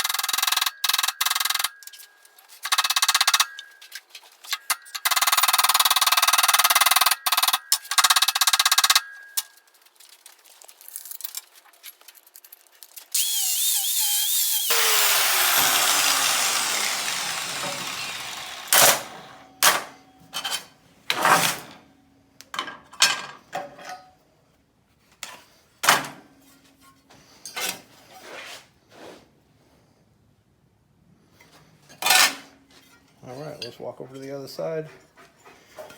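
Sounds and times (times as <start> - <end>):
power tool running: 13.1 - 19.5.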